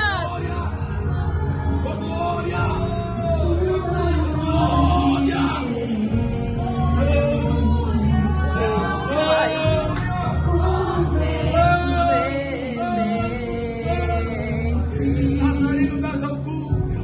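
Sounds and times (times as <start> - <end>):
worship song with sung vocals: 0.0 - 17.0.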